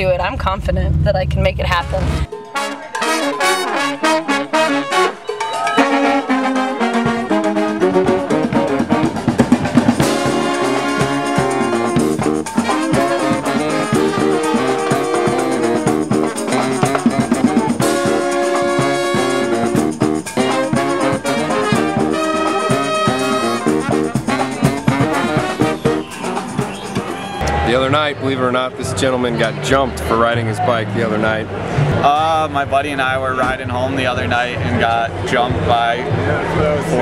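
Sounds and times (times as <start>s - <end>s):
drum and bass part: 0.0s - 28.1s
brass horn music: 1.5s - 28.2s.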